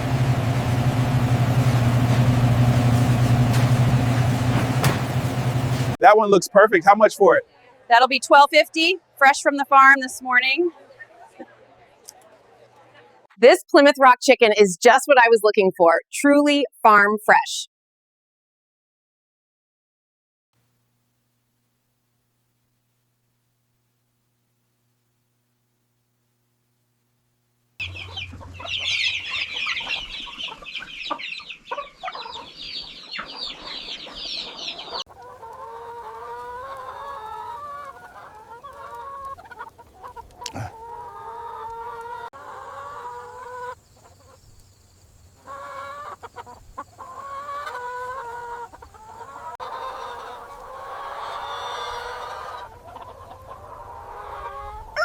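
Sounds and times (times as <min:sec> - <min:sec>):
high-pitched bird chatter: 0:27.8 - 0:35.0
hens clucking: 0:27.8 - 0:55.0.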